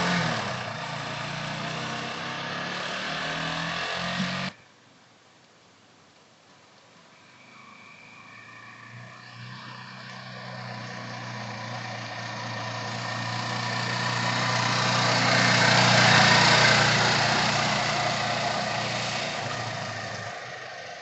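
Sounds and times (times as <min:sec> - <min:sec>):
motor vehicle passing: 0:00.0 - 0:04.5, 0:07.2 - 0:21.0
low engine hum: 0:08.8 - 0:21.0.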